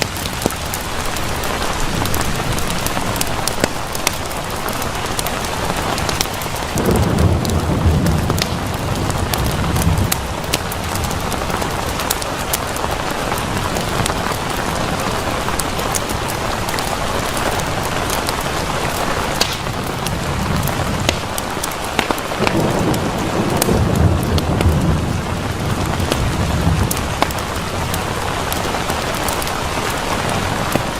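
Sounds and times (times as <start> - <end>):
rain drops ticking: 0.0 - 30.9
steady rain falling: 0.0 - 30.9
low thunder rumble: 4.9 - 14.1, 19.2 - 30.9.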